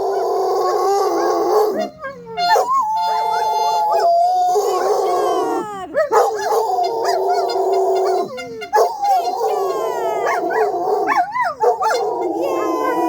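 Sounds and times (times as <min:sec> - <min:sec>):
dogs howling: 0:00.0 - 0:13.0.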